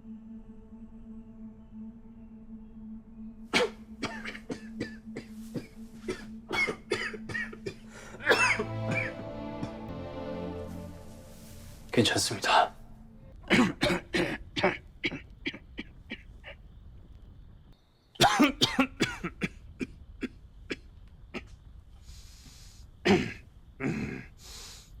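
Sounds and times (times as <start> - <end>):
man coughing: 3.5 - 9.2, 13.5 - 16.6, 18.2 - 19.6.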